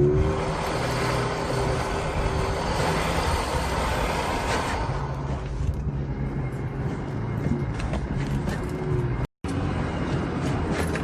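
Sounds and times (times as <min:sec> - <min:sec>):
off-road vehicle engine running: 0:00.0 - 0:11.0
rushing wind: 0:00.0 - 0:11.0.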